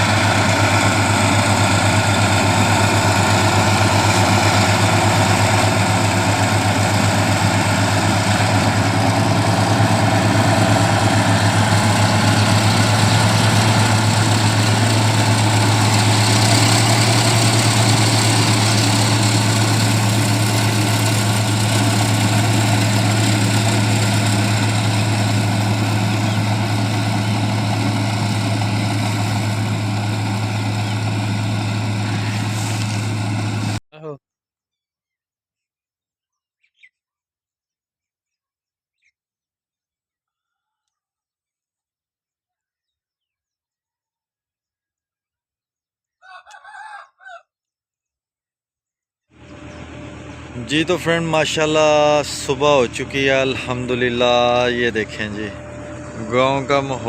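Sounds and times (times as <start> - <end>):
combine harvester engine droning: 0.0 - 33.8, 49.3 - 57.0
machinery clatter and rush: 0.0 - 33.8.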